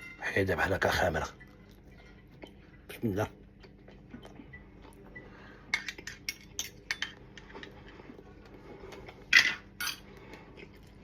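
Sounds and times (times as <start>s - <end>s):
kitchenware clinking: 5.7s - 7.8s, 9.3s - 10.1s.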